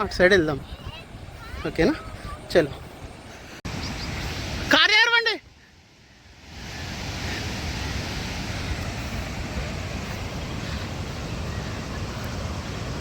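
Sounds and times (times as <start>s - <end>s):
waterfall rushing: 6.3s - 13.0s.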